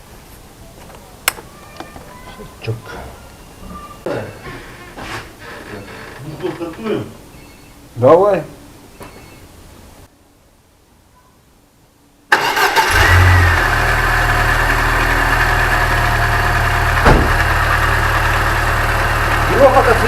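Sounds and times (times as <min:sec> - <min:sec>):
car engine idling: 0:12.4 - 0:20.0.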